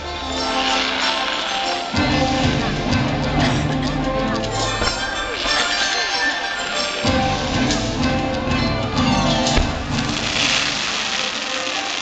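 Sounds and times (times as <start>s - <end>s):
soundtrack music with deep bass: 0.0s - 5.1s, 7.0s - 10.6s.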